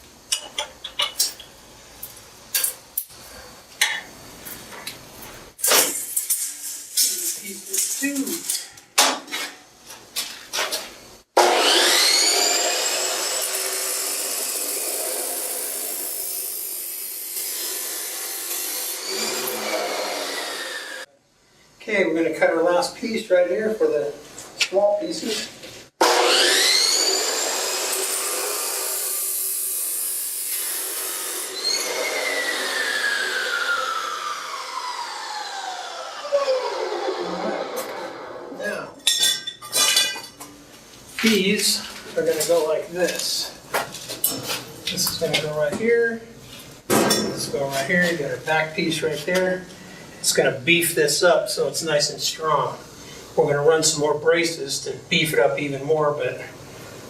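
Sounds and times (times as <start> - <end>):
chop saw blade whine: 11.4 - 21.1, 26.0 - 38.6
chop saw cutting steel: 11.4 - 21.1, 26.0 - 38.4.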